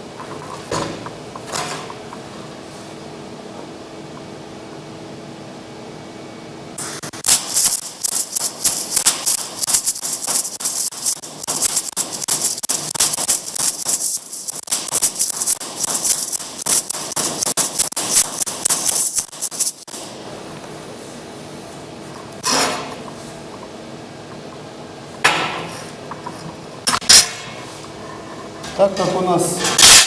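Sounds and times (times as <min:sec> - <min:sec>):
cooling fan hum: 0:00.0 - 0:29.8
welding arc crackling: 0:06.8 - 0:20.2.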